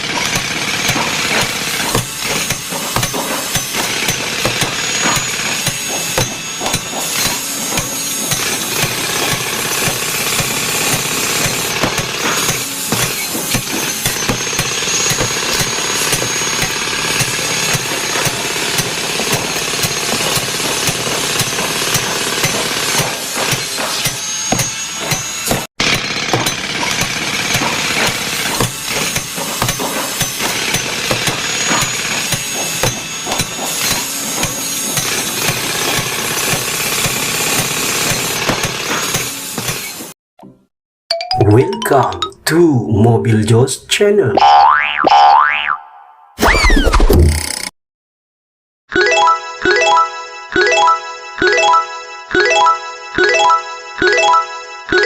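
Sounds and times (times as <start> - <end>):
heavy machinery clattering: 0.0 - 40.1.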